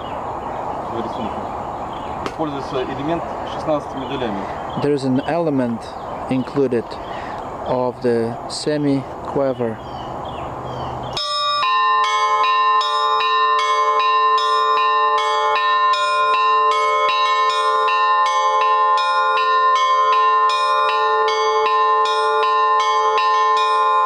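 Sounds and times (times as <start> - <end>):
church bells ringing fast: 11.2 - 24.0.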